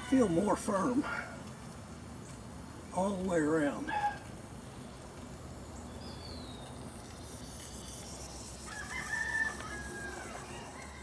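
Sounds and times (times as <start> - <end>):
rooster crowing: 8.6 - 11.0.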